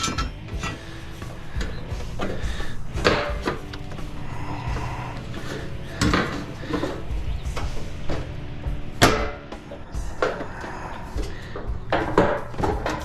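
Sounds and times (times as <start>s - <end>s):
metal knocks and clanks: 0.0s - 1.0s, 1.6s - 10.6s, 11.2s - 13.0s.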